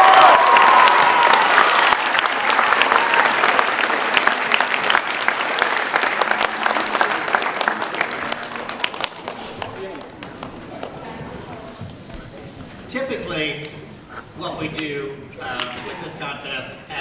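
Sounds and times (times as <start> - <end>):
audience applause: 0.0 - 11.6.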